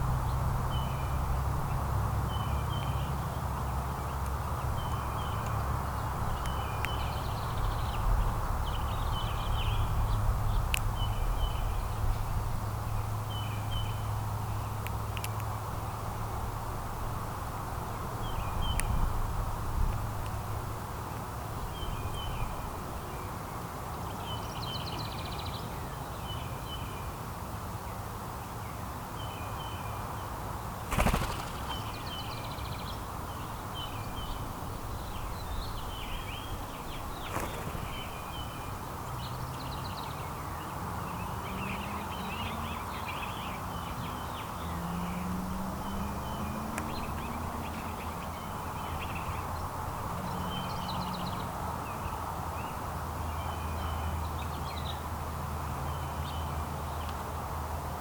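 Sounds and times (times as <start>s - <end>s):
small songbirds chirping: 0.0s - 58.0s
small click: 14.8s - 15.5s.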